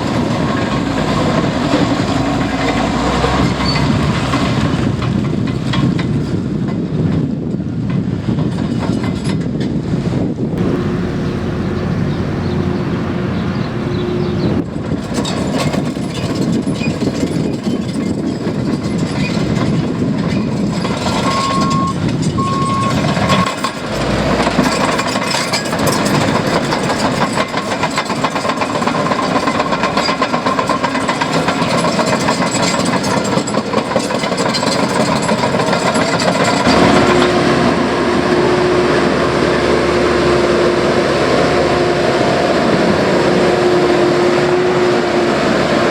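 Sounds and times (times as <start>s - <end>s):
diesel engines running: 0.0s - 45.9s
steel tracks clanking: 0.0s - 45.9s
reversing alarm beeping: 10.6s - 14.6s, 21.2s - 23.5s.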